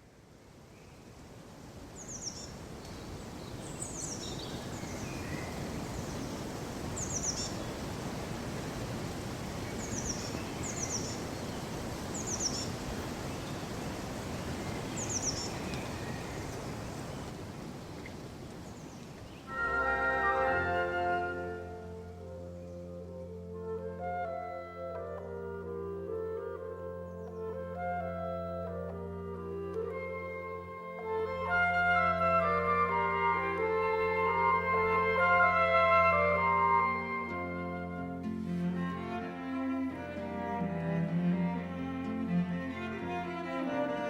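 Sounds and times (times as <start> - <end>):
rushing outdoor background: 1.4 - 44.0
birds chirping: 1.9 - 24.0, 24.9 - 28.9
music with sustained chords: 19.5 - 44.0.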